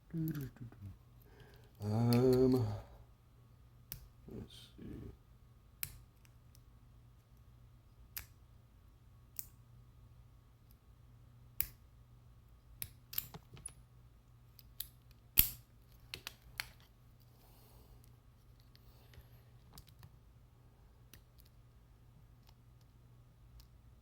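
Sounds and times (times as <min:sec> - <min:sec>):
faint steady hum: 0:00.0 - 0:24.0
lock picks clicking in a lock: 0:12.8 - 0:13.8, 0:14.5 - 0:16.9.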